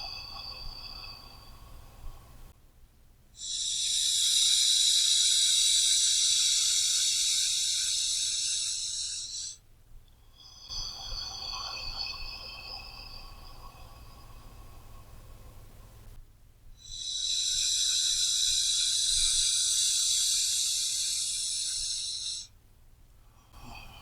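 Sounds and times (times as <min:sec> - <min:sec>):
deep human breath: 0:03.4 - 0:09.6, 0:16.8 - 0:22.5, 0:23.2 - 0:24.0.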